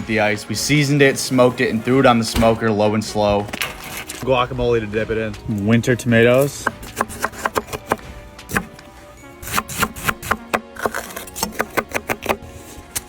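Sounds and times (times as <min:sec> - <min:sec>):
background music: 0:00.0 - 0:13.0
knife chopping on cutting board: 0:06.6 - 0:08.8, 0:09.4 - 0:12.5.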